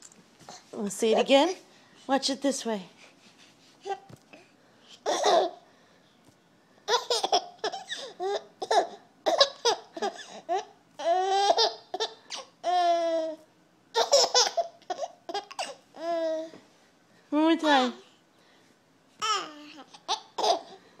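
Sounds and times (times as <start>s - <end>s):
baby giggling: 5.0s - 5.6s, 6.9s - 13.3s, 13.9s - 15.8s, 19.2s - 20.8s.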